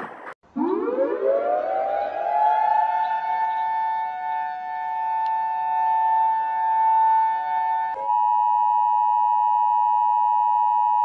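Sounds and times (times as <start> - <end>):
civil defense siren: 0.5 - 11.0.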